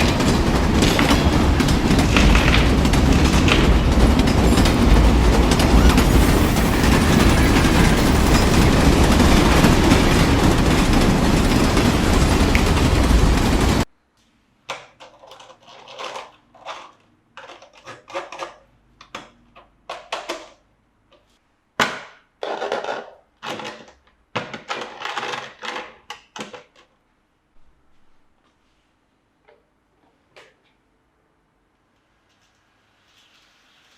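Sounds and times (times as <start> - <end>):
loud steady noise: 0.0 - 13.9.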